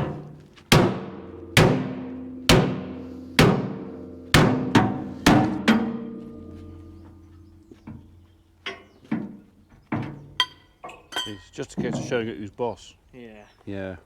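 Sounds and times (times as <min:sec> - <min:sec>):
hammer striking ringing steel plate: 0:00.1 - 0:07.7.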